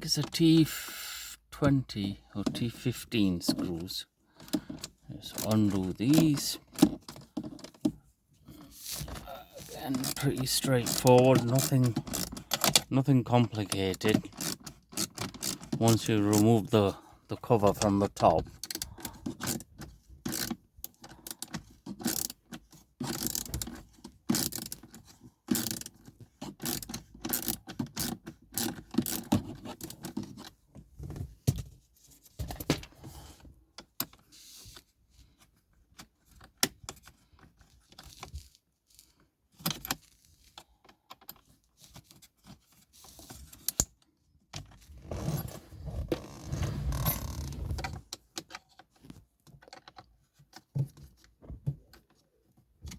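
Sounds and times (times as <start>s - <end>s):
hand tools clicking on screws: 9.0s - 12.9s, 20.3s - 22.4s, 23.0s - 26.0s, 26.6s - 30.0s.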